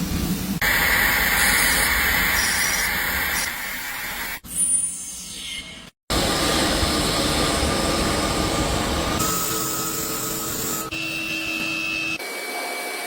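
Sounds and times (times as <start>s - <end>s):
steady machine whine: 6.1s - 13.0s.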